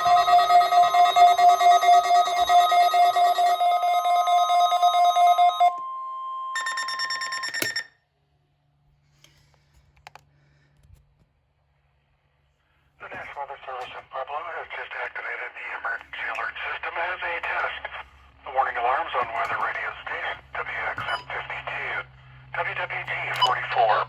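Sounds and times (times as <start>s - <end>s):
rapidly pulsing electronic beeping: 0.0s - 5.7s
steady warning tone: 0.0s - 7.8s, 16.2s - 24.0s.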